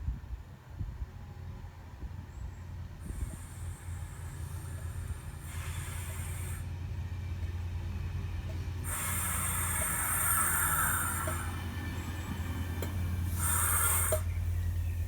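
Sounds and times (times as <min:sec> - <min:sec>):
train low rumble: 0:00.0 - 0:15.0
train hissing: 0:02.7 - 0:15.0.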